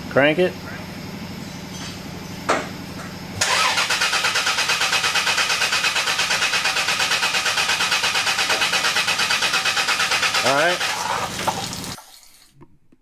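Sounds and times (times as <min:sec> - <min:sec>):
starter cranking car engine: 0:03.4 - 0:11.6.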